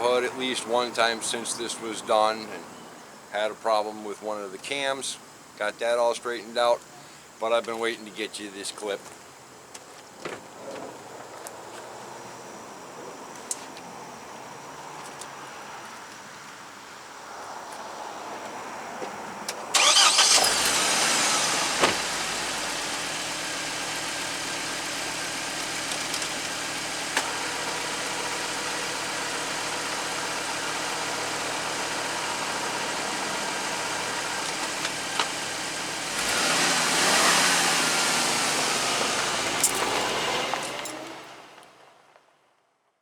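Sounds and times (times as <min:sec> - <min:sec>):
car engine starting and idling: 0:19.7 - 0:41.8.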